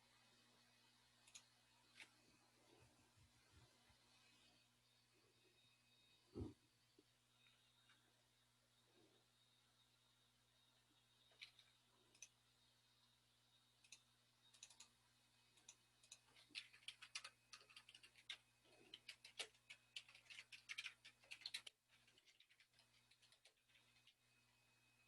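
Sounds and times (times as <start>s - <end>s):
faint clicking and tapping: 1.1s - 4.6s, 11.0s - 12.5s, 13.7s - 24.6s.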